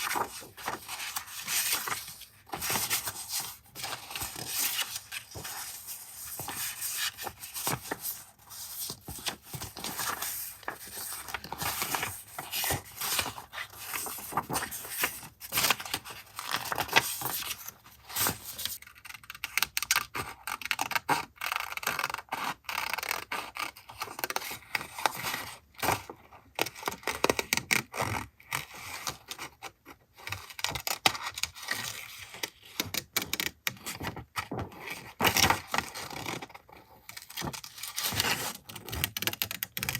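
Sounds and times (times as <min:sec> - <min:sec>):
paper rustling and scraping: 0:00.0 - 0:18.8.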